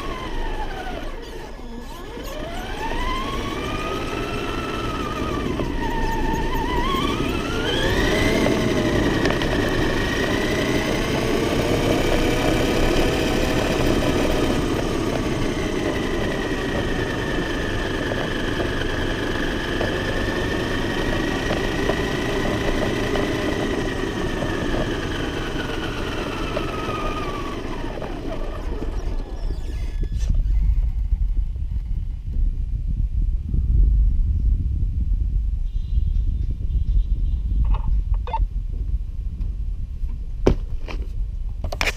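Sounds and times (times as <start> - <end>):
toy truck motor whine: 0.0 - 30.9
rough rumble: 0.0 - 41.9.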